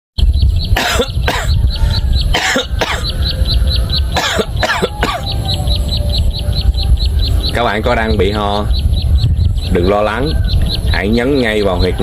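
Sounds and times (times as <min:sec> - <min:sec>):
steady high ticking: 0:00.2 - 0:11.9
person coughing: 0:00.8 - 0:01.6, 0:02.4 - 0:03.1, 0:04.2 - 0:05.3.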